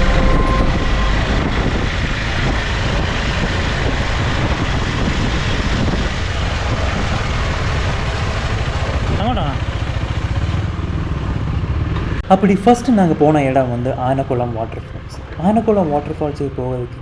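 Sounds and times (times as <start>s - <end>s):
wind rushing over microphone: 0.0s - 9.5s
motorcycle engine rumble: 0.0s - 17.0s.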